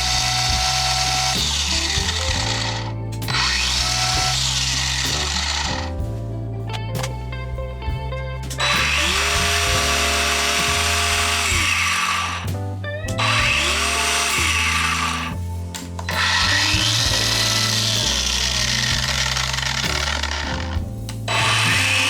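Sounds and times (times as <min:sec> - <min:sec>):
biscuit jointer motor whine: 0:00.0 - 0:05.8, 0:08.6 - 0:12.4, 0:13.2 - 0:15.4, 0:16.1 - 0:20.4, 0:21.4 - 0:22.0
background music with bass line: 0:00.0 - 0:22.0.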